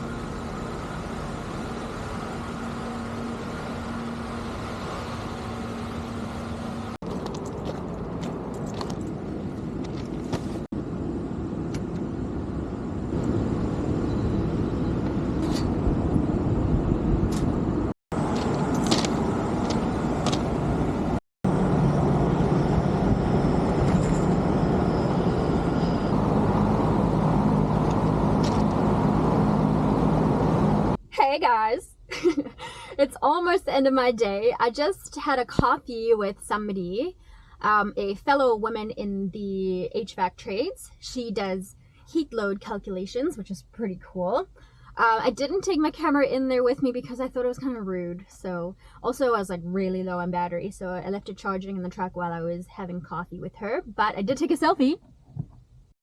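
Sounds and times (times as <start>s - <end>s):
motors rumbling: 0.0s - 31.0s.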